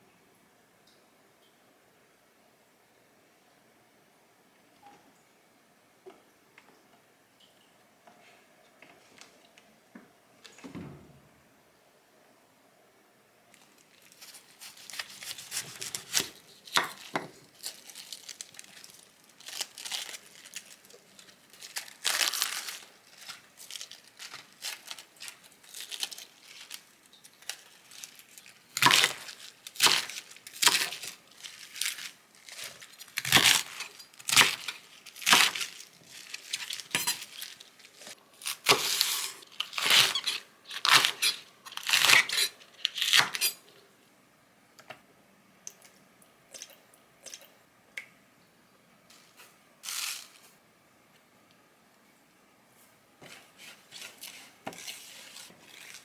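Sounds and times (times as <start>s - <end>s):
tearing and crinkling: 13.6s - 43.6s, 49.1s - 50.6s, 53.6s - 56.0s.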